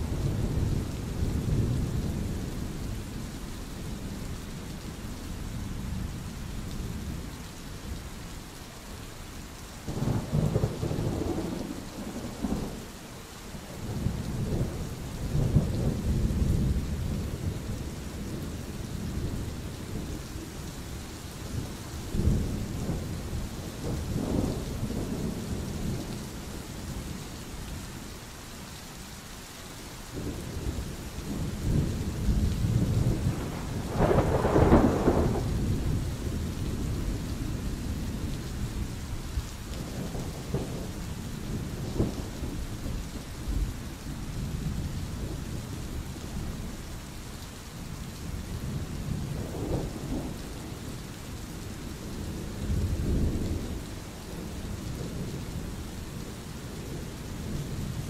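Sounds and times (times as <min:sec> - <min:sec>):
steady rain: 0:00.0 - 0:58.0
thunder rumbling: 0:09.9 - 0:12.8, 0:21.5 - 0:27.2, 0:30.2 - 0:39.0, 0:39.8 - 0:46.1, 0:48.2 - 0:50.9.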